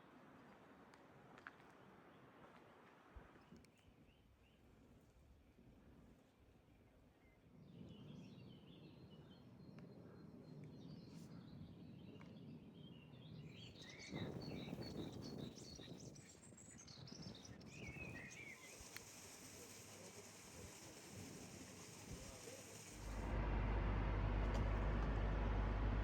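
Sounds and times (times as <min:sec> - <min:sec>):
low outdoor background rumble: 0:22.2 - 0:26.0.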